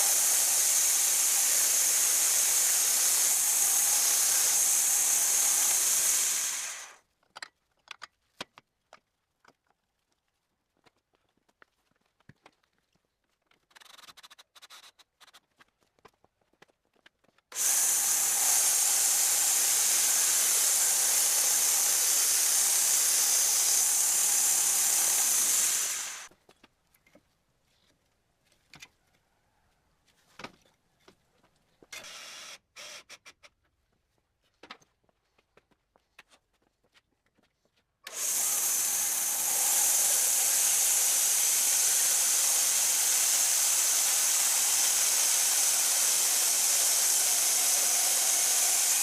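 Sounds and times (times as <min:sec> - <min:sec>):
power tool high-pitched whirring: 0:00.0 - 0:07.0, 0:17.6 - 0:26.3, 0:38.1 - 0:49.0.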